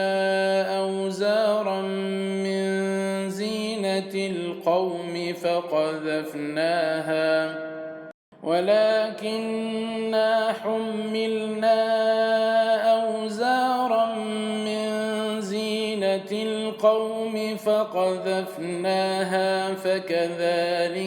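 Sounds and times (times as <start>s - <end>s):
man chanting melodically: 8.5s - 21.0s.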